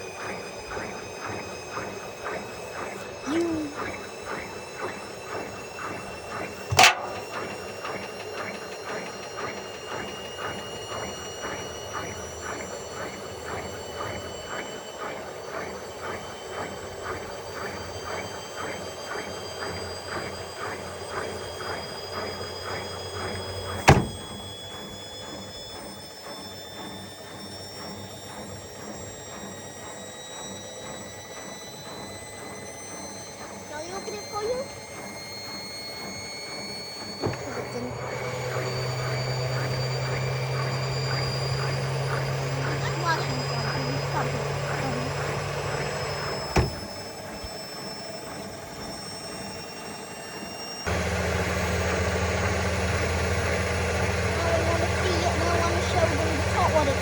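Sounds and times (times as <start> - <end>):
washing machine motor whine: 0.0 - 57.0
ball thumping in drum: 6.7 - 7.6.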